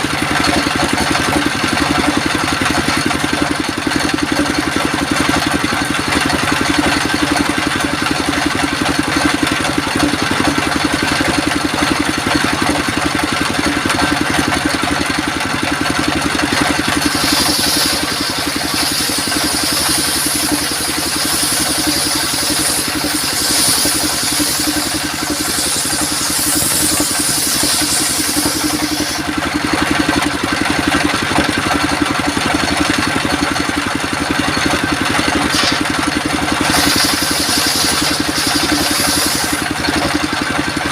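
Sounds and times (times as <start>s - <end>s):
sawmill engine running: 0.0s - 40.9s
saw blade hissing through wood: 14.6s - 29.8s, 34.6s - 40.4s.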